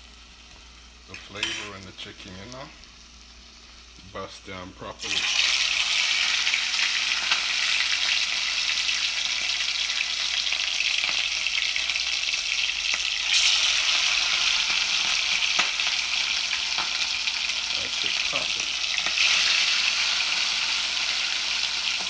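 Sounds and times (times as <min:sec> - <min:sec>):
chicken sizzling in hot oil: 0:00.0 - 0:22.0
oil crackling and popping: 0:05.0 - 0:22.0.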